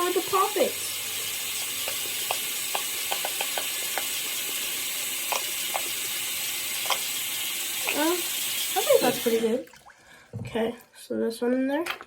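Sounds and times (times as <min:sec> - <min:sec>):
water running from a tap: 0:00.0 - 0:10.8
small sharp clicks and knocks: 0:01.6 - 0:04.1.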